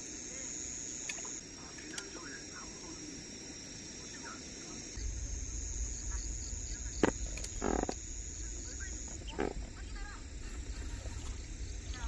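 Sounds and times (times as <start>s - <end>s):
insects trilling: 0.0s - 12.0s
wind rumble on microphone: 5.0s - 12.0s.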